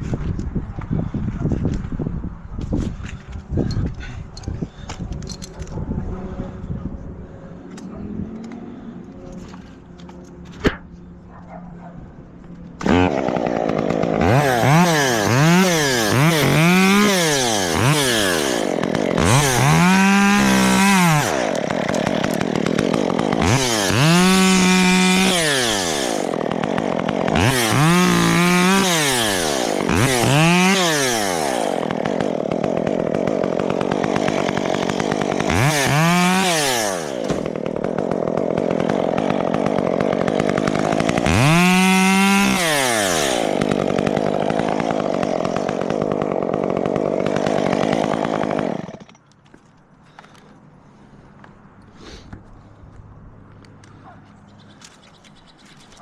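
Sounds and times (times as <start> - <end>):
chainsaw revving: 12.7 - 49.2.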